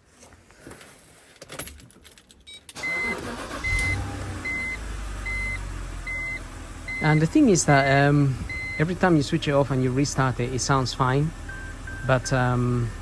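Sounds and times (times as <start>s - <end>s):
dashboard warning chime beeping: 2.5s - 13.0s
car engine starting and idling: 2.7s - 13.0s.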